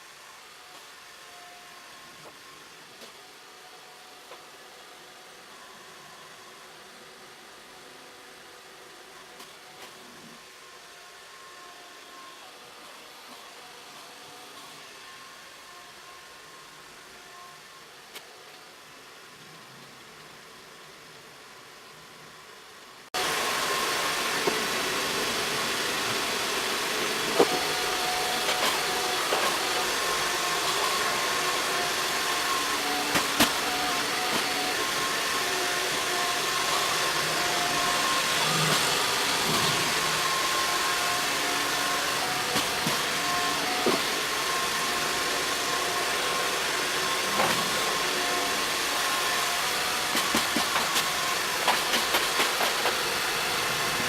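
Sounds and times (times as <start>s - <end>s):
robot vacuum motor whining: 23.2s - 54.0s.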